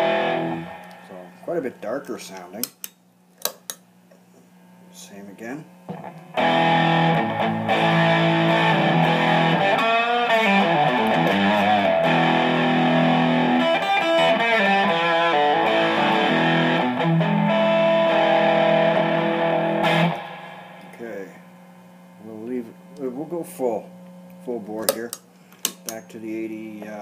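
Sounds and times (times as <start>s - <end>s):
distorted electric guitar: 0.0s - 1.3s, 5.9s - 21.1s.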